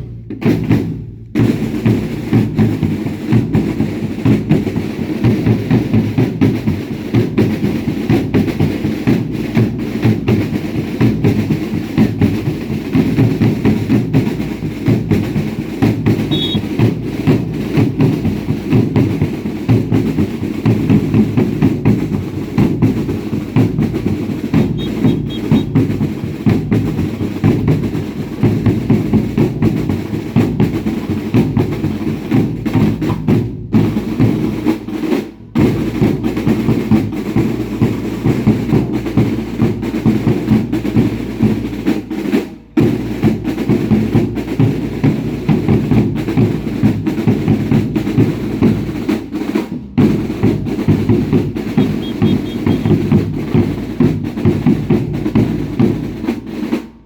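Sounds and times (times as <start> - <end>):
drums beating fast rhythm: 0.0 - 57.0.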